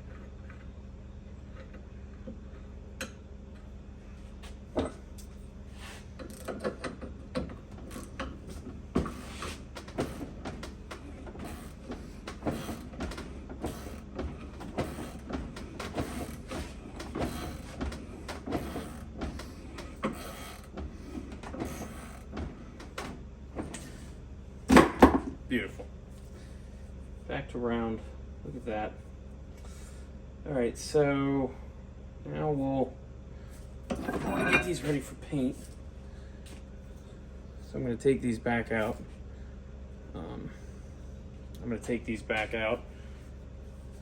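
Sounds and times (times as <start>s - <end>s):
low shop hum: 0.0s - 44.0s
shop press metal clicks and creaks: 6.2s - 24.0s.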